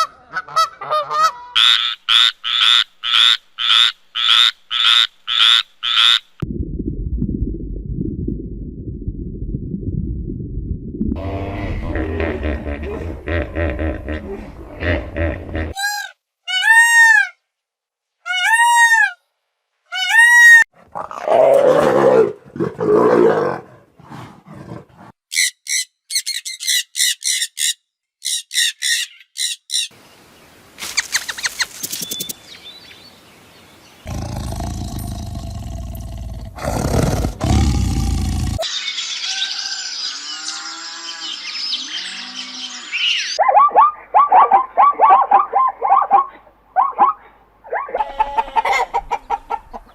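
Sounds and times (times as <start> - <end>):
low rough animal call: 11.2 - 15.8, 34.0 - 38.6
pitched animal calls: 41.8 - 49.8.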